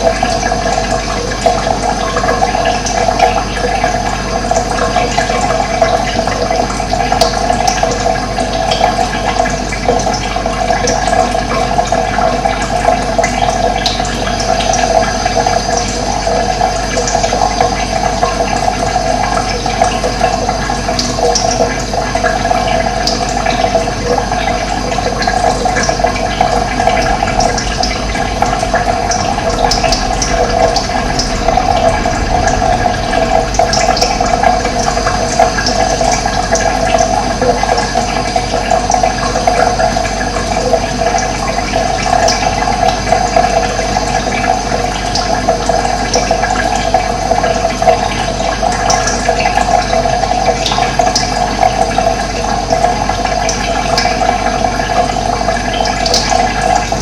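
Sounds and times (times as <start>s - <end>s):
water rushing: 13.6s - 50.7s.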